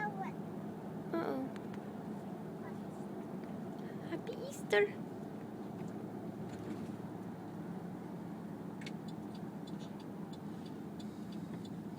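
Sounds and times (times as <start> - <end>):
low background rumble: 0.0 - 11.9.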